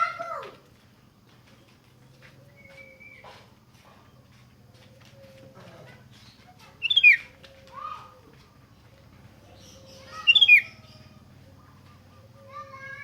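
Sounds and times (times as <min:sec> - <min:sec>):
bulbul calling: 0:06.8 - 0:07.3, 0:09.5 - 0:12.5.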